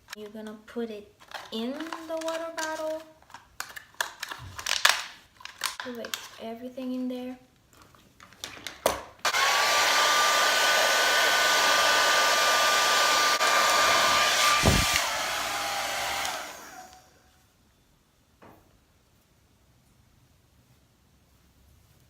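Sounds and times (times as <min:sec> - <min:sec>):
hair dryer switch clicks: 0:09.3 - 0:17.0
hair dryer blowing with whine: 0:09.3 - 0:17.2
short low thud: 0:14.5 - 0:15.0.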